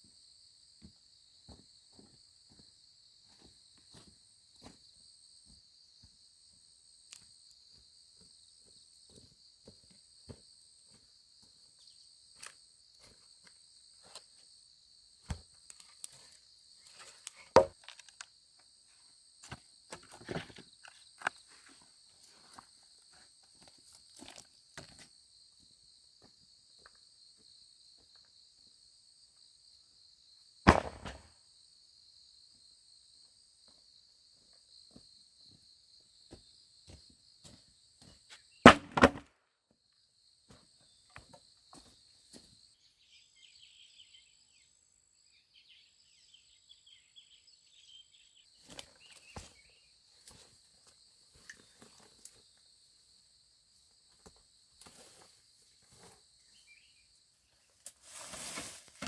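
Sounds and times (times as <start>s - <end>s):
crickets chirping: 0.0s - 38.7s, 39.8s - 59.0s
sharp thud: 30.7s - 31.3s
footsteps on forest floor: 58.0s - 59.0s.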